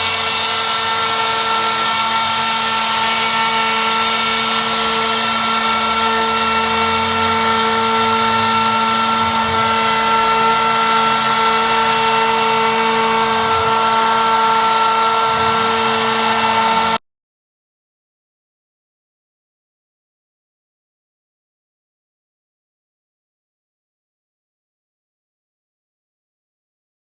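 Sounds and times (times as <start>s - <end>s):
router spindle whine while milling: 0.0s - 17.0s.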